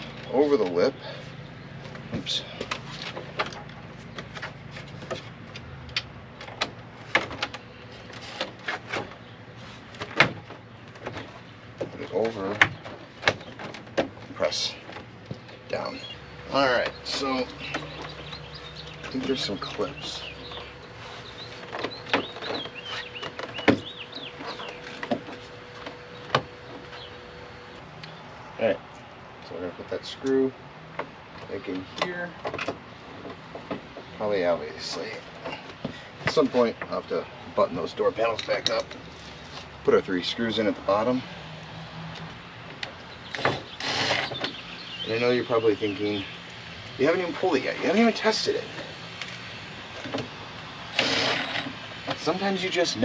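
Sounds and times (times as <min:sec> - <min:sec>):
small birds chirping: 0:08.9 - 0:28.5, 0:42.1 - 0:53.0.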